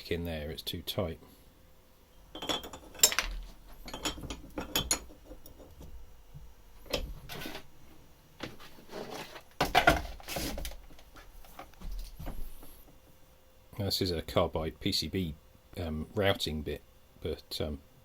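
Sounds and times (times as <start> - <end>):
metal tools clinking and rattling: 2.3 - 5.8.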